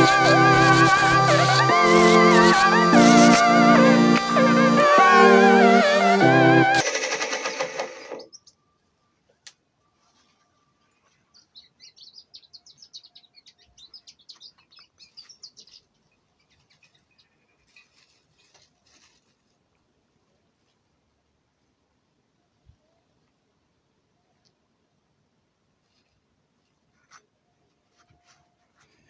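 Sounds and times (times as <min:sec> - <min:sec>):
background music: 0:00.0 - 0:06.9
small bird chirping: 0:08.2 - 0:08.7, 0:11.0 - 0:17.8.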